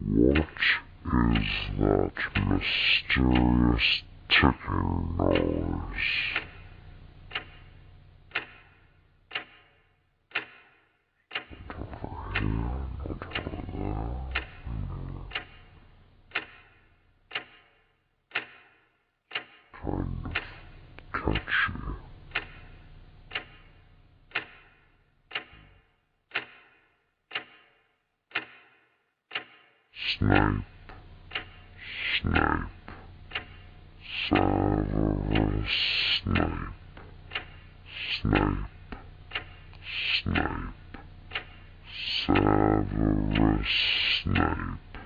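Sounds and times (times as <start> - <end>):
low hum: 0.0 - 9.3, 11.5 - 17.3, 19.8 - 24.9, 30.0 - 45.0
clock ticking: 0.0 - 45.0.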